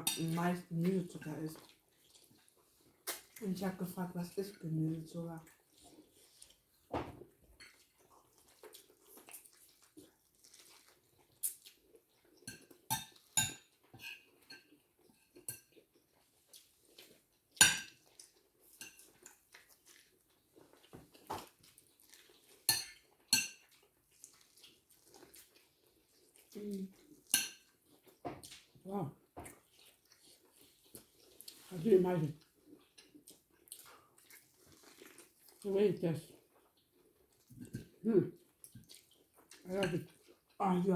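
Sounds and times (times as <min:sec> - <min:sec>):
cutlery clinking on plates: 0:12.5 - 0:15.7, 0:17.6 - 0:18.0, 0:18.8 - 0:19.4, 0:22.7 - 0:23.7, 0:27.3 - 0:27.7.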